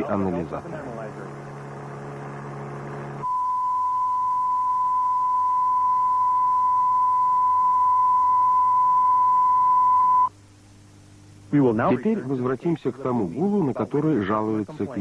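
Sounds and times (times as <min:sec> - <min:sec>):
low hum: 0:00.8 - 0:12.3
pure test tone: 0:01.3 - 0:10.3.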